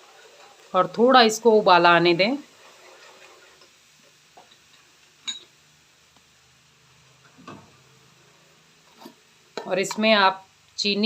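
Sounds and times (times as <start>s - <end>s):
spoon tapping a pan: 4.4s - 5.6s, 9.6s - 10.1s.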